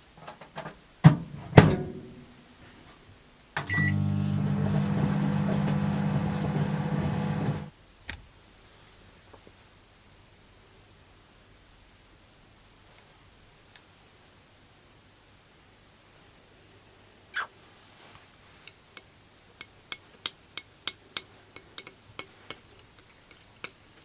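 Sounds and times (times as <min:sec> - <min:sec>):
microwave door clicks: 0:01.1 - 0:02.2, 0:03.6 - 0:07.7
microwave humming: 0:01.1 - 0:02.3, 0:03.6 - 0:07.7
microwave beep: 0:03.6 - 0:07.7.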